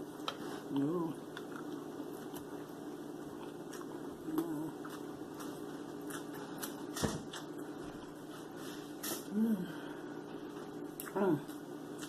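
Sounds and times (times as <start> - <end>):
chewing crunchy food: 0.1 - 8.2
person humming: 0.7 - 1.2, 4.2 - 4.8, 9.3 - 9.9, 11.1 - 11.5.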